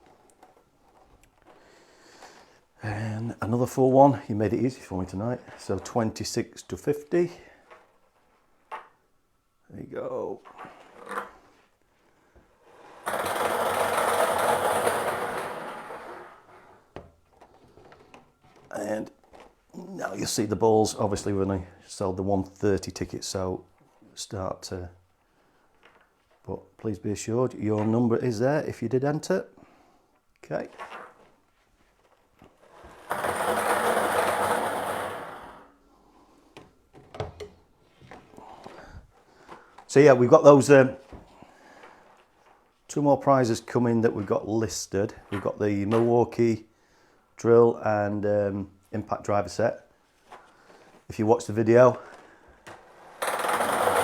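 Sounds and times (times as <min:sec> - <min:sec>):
plastic balls rattling in tube: 0:12.9 - 0:16.6, 0:32.6 - 0:35.8, 0:53.0 - 0:54.0.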